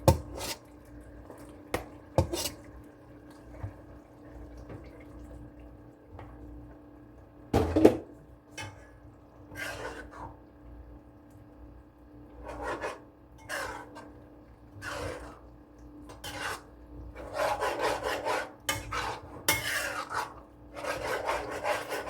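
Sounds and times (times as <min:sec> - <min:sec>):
water running: 0:00.0 - 0:06.7.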